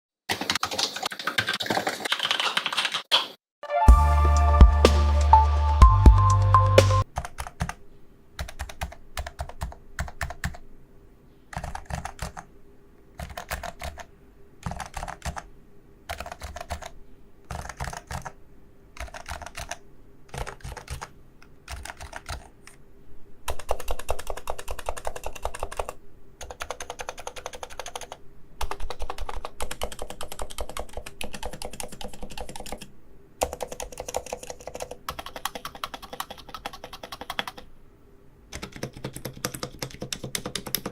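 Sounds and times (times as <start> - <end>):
keyboard typing: 0.3 - 3.4, 4.0 - 7.8, 8.4 - 10.6, 11.5 - 12.5, 13.2 - 15.5, 16.1 - 18.4, 19.0 - 22.8, 23.5 - 37.7, 38.5 - 40.9
music: 3.6 - 7.0.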